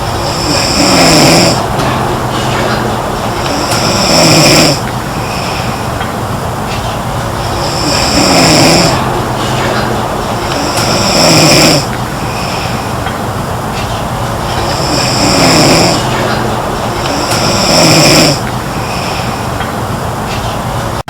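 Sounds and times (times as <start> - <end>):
low background noise: 0.0 - 21.0
girl snoring: 0.4 - 1.6, 7.7 - 8.9.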